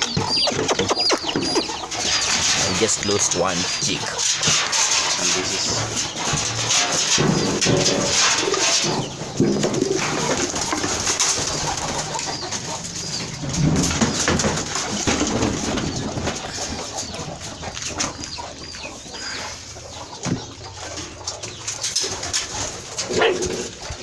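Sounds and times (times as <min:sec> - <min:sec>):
high bird peeps: 0:00.0 - 0:04.2
birds cooing: 0:00.0 - 0:24.0.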